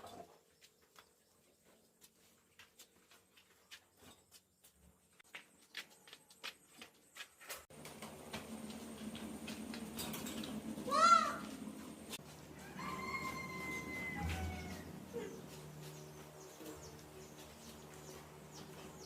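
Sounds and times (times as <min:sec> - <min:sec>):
steady low hum: 0:07.7 - 0:19.0.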